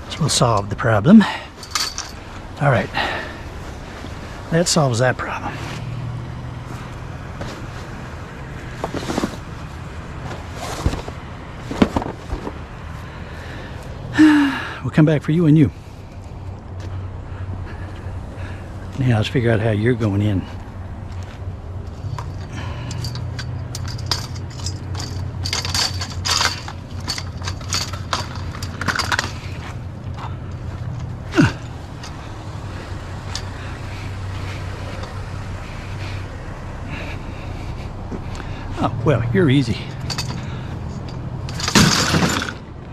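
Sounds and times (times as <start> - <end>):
vehicle engine idling hum: 0.0 - 42.9
scrap metal knocks and clatters: 7.3 - 12.7, 21.8 - 32.2, 39.8 - 42.7
sharply falling sound: 41.5 - 42.6.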